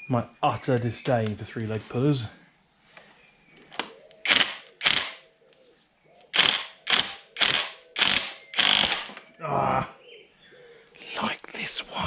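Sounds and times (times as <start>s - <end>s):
ratchet spanner clicking: 4.3s - 5.2s, 6.4s - 9.1s.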